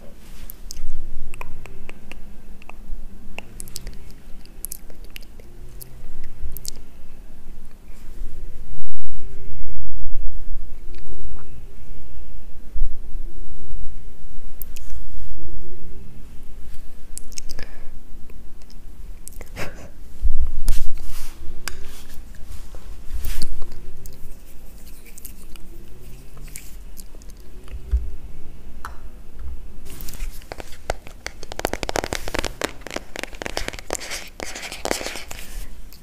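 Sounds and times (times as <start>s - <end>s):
fast crackling: 30.0s - 35.6s.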